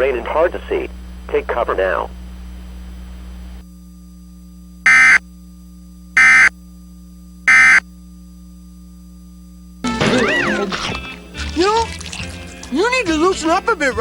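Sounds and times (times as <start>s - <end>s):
digital data tone bursts: 4.9s - 5.2s, 6.2s - 6.5s, 7.5s - 7.8s.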